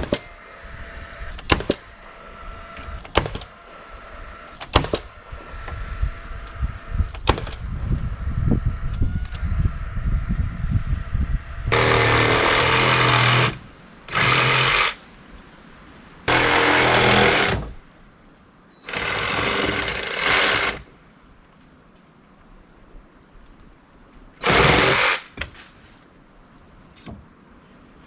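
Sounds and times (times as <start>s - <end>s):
power tool running: 11.7s - 15.0s, 16.3s - 17.7s, 18.9s - 20.9s, 24.4s - 25.4s.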